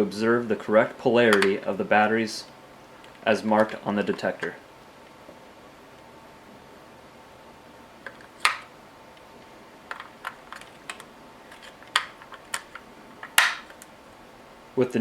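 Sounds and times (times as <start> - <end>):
plastic clicks of batteries: 1.3 - 1.6, 8.0 - 8.7, 9.9 - 13.9.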